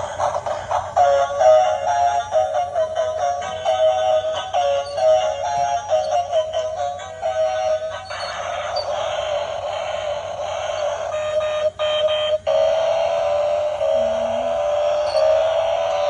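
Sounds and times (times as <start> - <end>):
whirring noise: 0.0 - 16.0
electronic beeping tune: 3.2 - 9.5, 13.9 - 16.0.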